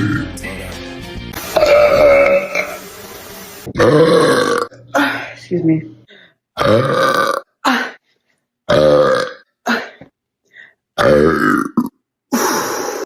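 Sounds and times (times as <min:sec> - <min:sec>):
woman belching loudly: 0:01.6 - 0:02.8, 0:03.7 - 0:05.0, 0:06.6 - 0:07.5, 0:08.7 - 0:09.4, 0:11.0 - 0:12.0.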